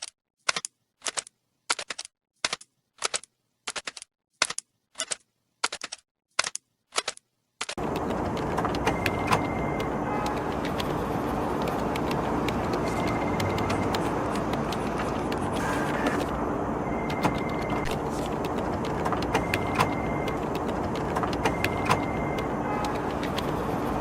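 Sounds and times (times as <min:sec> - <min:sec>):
dense background noise: 0:07.8 - 0:24.0
keyboard key clicks: 0:17.1 - 0:23.6.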